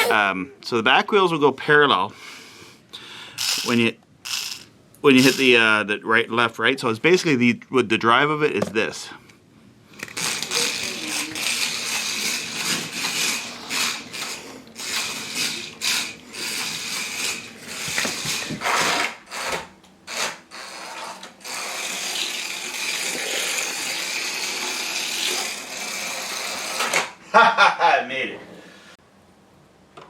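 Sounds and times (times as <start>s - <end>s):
toy car motor whirring: 3.4s - 5.5s, 10.0s - 27.2s.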